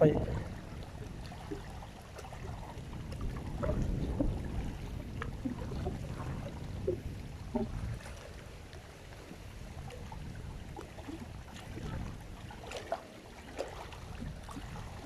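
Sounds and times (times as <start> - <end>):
water lapping: 0.0 - 15.0.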